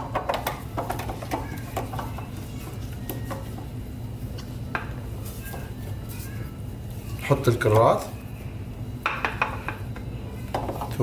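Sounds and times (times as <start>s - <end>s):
food knocking on metal tray: 0.0s - 2.3s.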